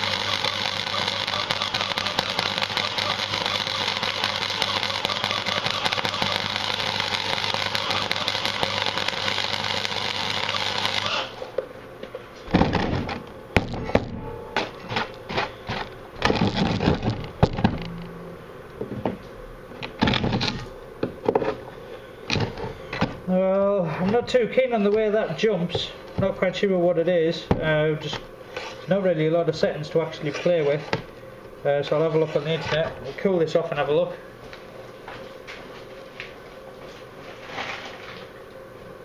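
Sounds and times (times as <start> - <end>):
short sharp bursts and clicks: 0.0 - 11.4
welder arc crackling: 0.0 - 11.6, 12.7 - 18.8
electrical hum: 0.0 - 39.0.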